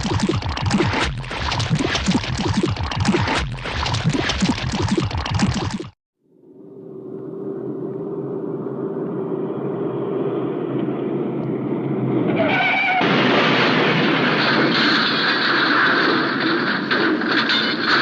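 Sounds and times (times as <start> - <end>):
cartoon rumbling noise: 0.0 - 6.0.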